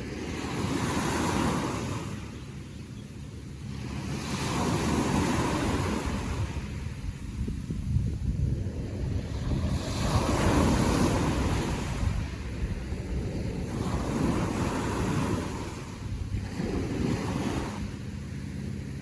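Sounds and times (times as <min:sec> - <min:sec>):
ocean waves washing ashore: 0:00.0 - 0:19.0
wind buffeting microphone: 0:00.0 - 0:19.0.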